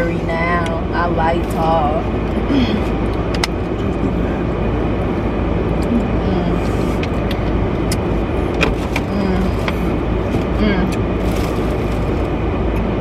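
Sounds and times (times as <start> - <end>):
low rumble inside car cabin: 0.0 - 13.0.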